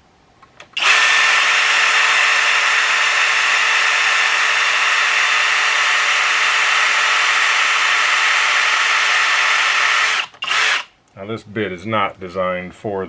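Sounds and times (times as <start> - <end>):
power drill boring through wood: 0.8 - 10.9.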